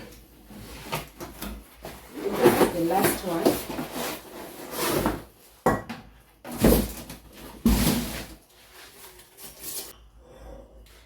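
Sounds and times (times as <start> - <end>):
packaging rustling and knocking: 0.5 - 5.3.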